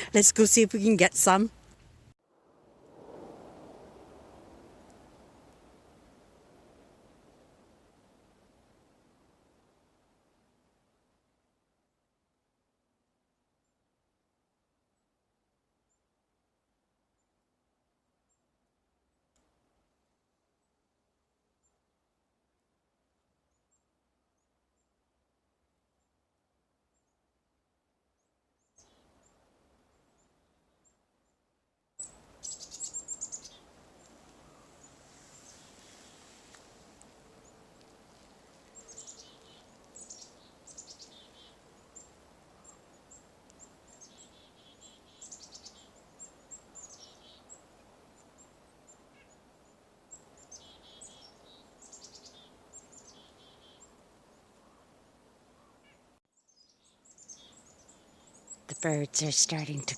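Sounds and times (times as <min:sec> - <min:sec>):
chickadees chattering calls: 0:00.0 - 0:01.6
faint steady hiss: 0:00.0 - 0:11.7, 0:32.0 - 0:59.9.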